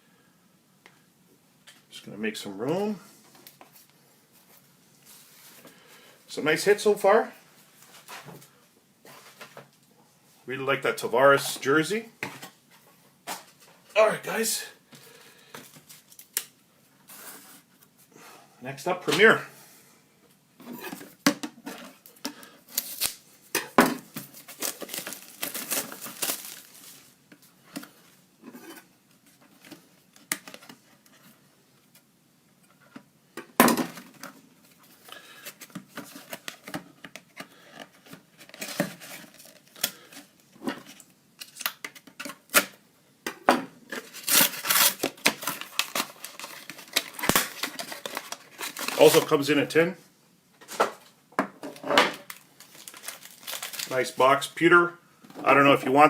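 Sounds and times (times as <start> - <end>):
plastic wrap crinkling and tearing: 22.7 - 23.2, 24.1 - 27.2, 44.0 - 49.4, 52.2 - 54.2.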